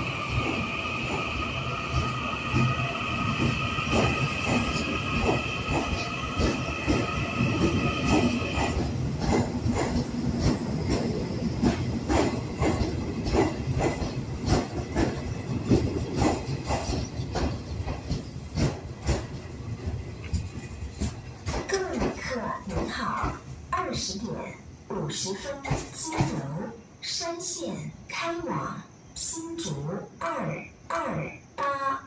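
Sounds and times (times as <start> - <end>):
train wheels clickety-clack: 0.0 - 24.2, 25.4 - 26.5.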